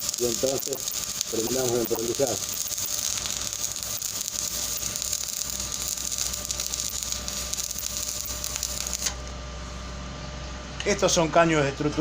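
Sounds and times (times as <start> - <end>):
welding arc crackling: 0.0 - 9.4.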